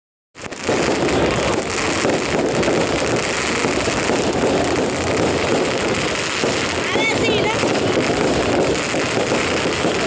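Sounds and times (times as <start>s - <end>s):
fireworks crackling: 0.4s - 10.0s.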